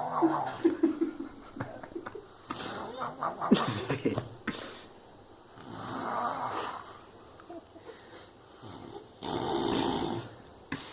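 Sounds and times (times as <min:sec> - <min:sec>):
person snoring: 0:05.6 - 0:07.1, 0:08.6 - 0:10.3.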